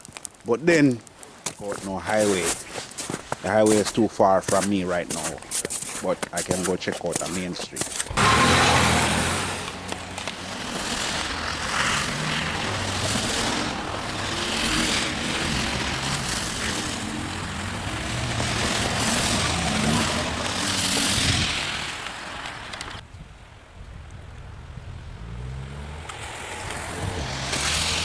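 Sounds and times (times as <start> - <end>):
road traffic passing: 1.9 - 23.0, 24.6 - 28.0
wind rumbling on microphone: 8.0 - 28.0.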